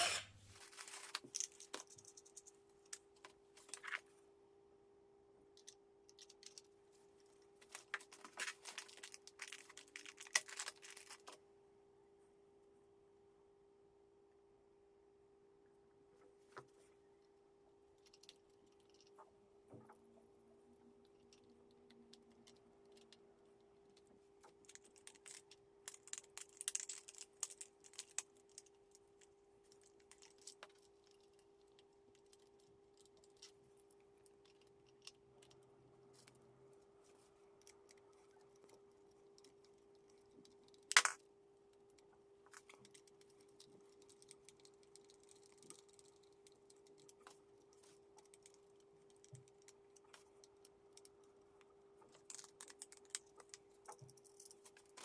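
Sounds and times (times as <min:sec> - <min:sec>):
packaging rustling: 0:00.4 - 0:02.0, 0:07.6 - 0:11.4.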